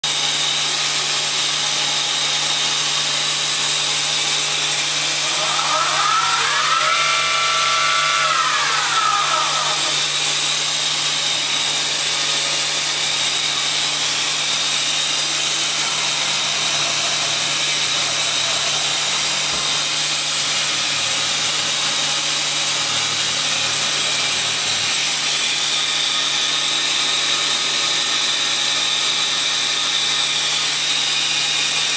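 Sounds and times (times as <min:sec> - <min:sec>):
spindle whine: 0:04.7 - 0:21.6.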